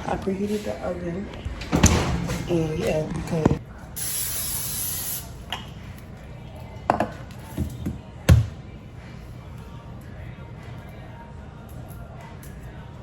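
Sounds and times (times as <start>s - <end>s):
hiss: 4.0s - 5.3s.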